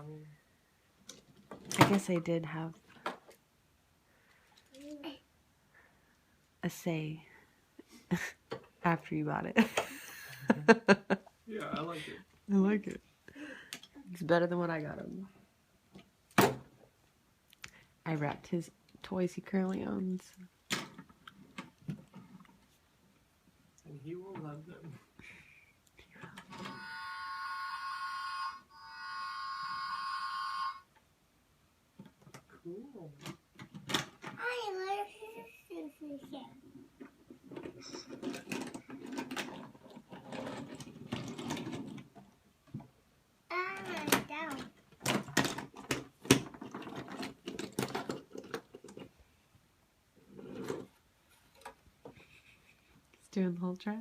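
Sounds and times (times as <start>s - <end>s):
buzzy electronic toy horn: 26.6s - 30.9s.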